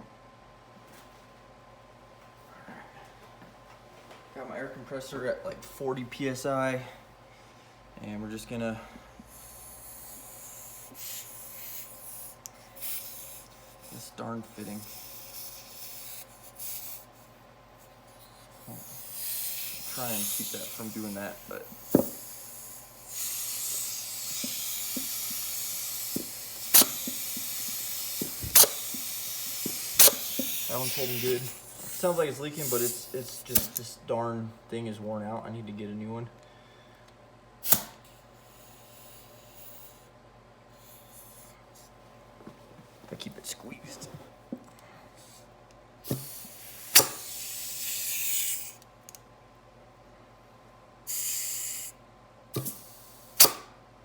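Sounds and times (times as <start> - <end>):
loud air burst: 8.8 - 17.2, 18.1 - 33.8, 37.6 - 40.1, 46.0 - 48.8, 51.1 - 52.0, 52.6 - 53.8
compressed air hissing: 8.8 - 33.8, 37.6 - 40.1, 40.8 - 41.6, 46.0 - 48.8, 51.1 - 52.0, 52.6 - 53.7
sharp click: 26.2 - 27.5, 33.5 - 33.9, 37.7 - 38.0, 47.0 - 47.2, 53.4 - 53.7.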